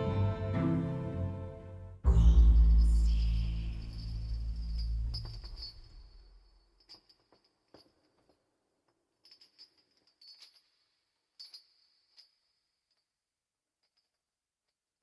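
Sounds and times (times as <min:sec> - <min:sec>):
faint metallic jingling: 0:02.4 - 0:13.2.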